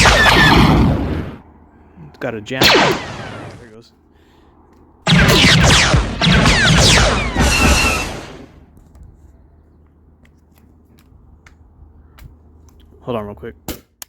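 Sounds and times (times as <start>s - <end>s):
compressed air blasting from gun: 5.1s - 8.5s.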